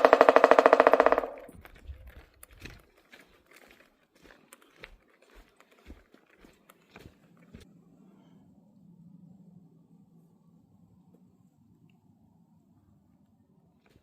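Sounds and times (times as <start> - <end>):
woodpecker drumming on a tree: 0.0 - 1.8.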